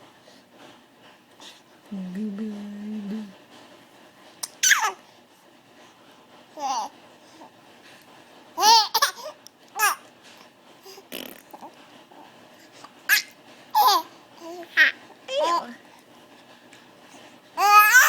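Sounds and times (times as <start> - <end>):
baby cooing: 17.6 - 18.0.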